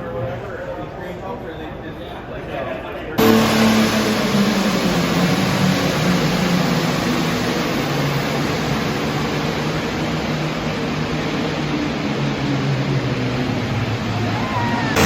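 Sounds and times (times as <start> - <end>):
heavy engine running loud: 3.2 - 15.0.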